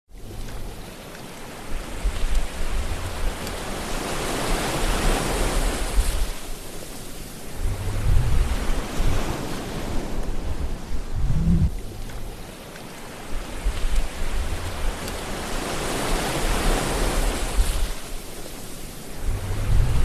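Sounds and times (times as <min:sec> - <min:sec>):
sea waves washing in: 0:00.1 - 0:20.0
low rumble: 0:07.5 - 0:12.5, 0:19.2 - 0:20.0.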